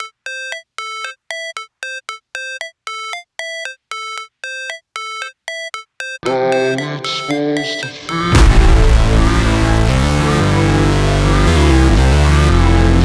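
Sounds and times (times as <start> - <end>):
synth beeping notes: 0.0 - 13.0
electronic track with bass: 6.2 - 13.0.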